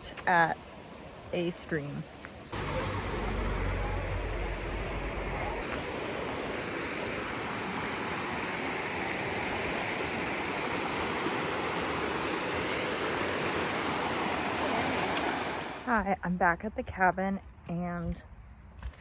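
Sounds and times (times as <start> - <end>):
stream rushing over rocks: 2.5 - 15.9
low rumble: 2.6 - 5.6.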